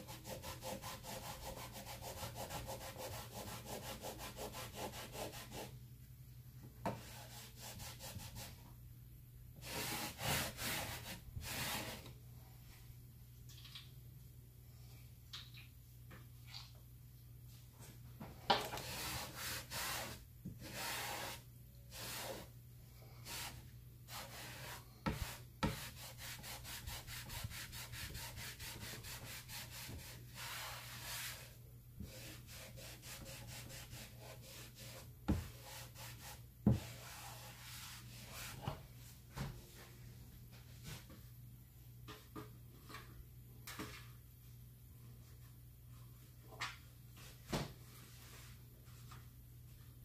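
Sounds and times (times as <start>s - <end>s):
scraping strokes on hard surface: 9.6s - 12.1s, 18.8s - 22.5s, 23.2s - 38.8s.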